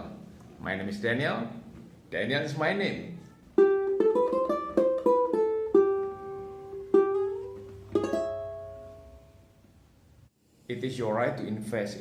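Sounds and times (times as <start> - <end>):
ukulele plucked notes and chord: 3.6 - 9.4.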